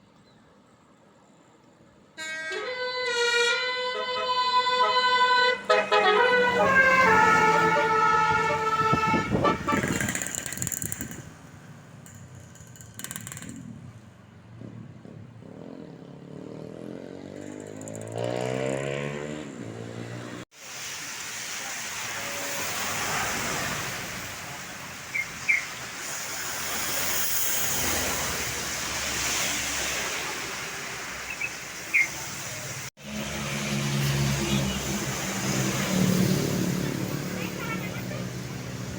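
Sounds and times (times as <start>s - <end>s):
roar of passing traffic: 3.7s - 20.5s, 21.2s - 38.9s
vehicle engine accelerating past: 14.6s - 20.4s, 33.0s - 37.3s.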